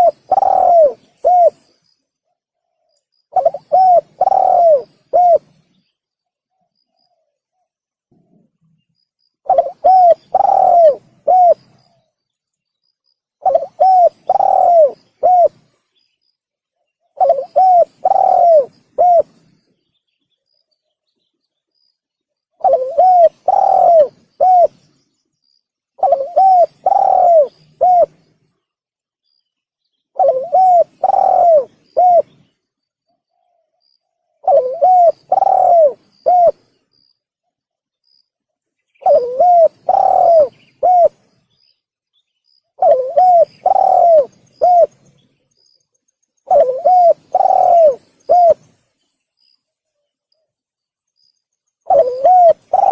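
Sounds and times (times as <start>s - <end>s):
spotted dove cooing: 0.0s - 2.4s, 3.3s - 5.6s, 9.4s - 12.0s, 13.4s - 15.8s, 17.1s - 19.5s, 22.6s - 24.9s, 26.0s - 28.2s, 30.2s - 32.5s, 34.4s - 36.7s, 39.0s - 41.2s, 42.8s - 45.0s, 46.5s - 48.8s, 51.8s - 52.9s.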